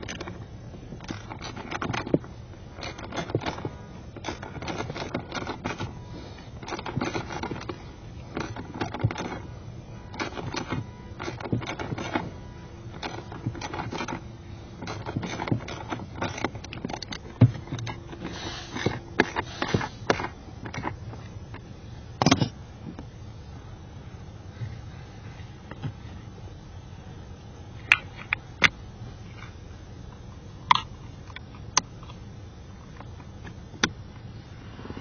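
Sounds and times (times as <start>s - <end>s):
small hard parts clicking: 0.0s - 23.0s.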